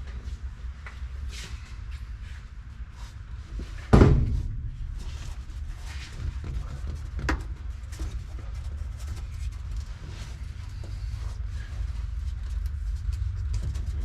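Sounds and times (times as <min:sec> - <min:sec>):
steady low rumble: 0:00.0 - 0:14.0
sharp knock: 0:03.9 - 0:05.5
heavy thump with ringing: 0:03.9 - 0:06.6.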